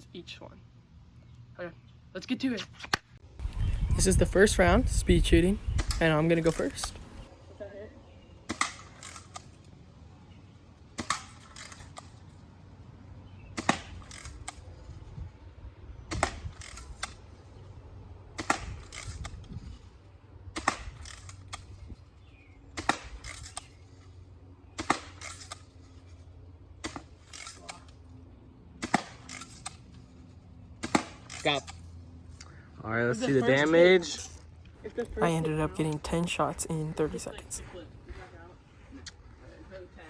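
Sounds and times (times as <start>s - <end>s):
bb gun shots: 13.6s - 14.2s, 18.4s - 19.1s, 20.5s - 21.2s, 22.7s - 23.5s, 24.8s - 25.4s, 28.8s - 29.5s, 30.8s - 31.4s.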